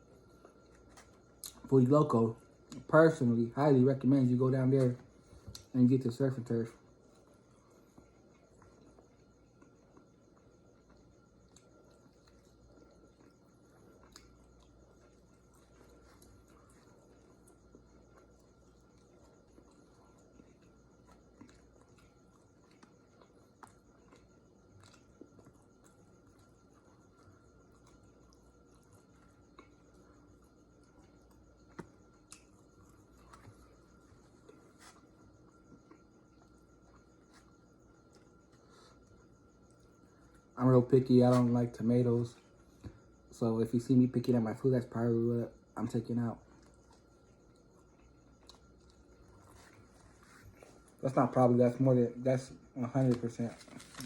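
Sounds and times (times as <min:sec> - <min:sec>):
faint chewing: 0:00.0 - 0:03.4, 0:04.0 - 0:41.5, 0:42.3 - 0:43.4, 0:44.2 - 0:51.8, 0:52.4 - 0:54.0
crickets chirping: 0:00.0 - 0:54.0.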